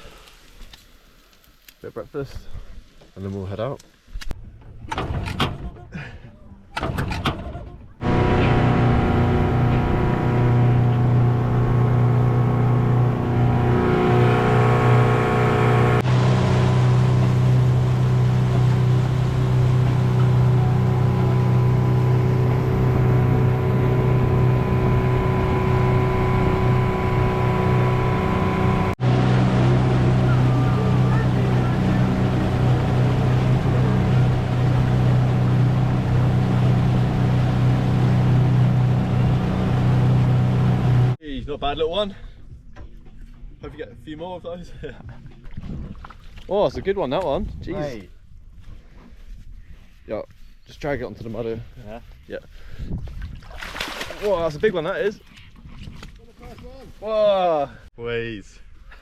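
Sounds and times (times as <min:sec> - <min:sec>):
wind: 0:00.0 - 0:59.0
outboard motor running: 0:08.0 - 0:41.2
water rushing: 0:08.0 - 0:41.2.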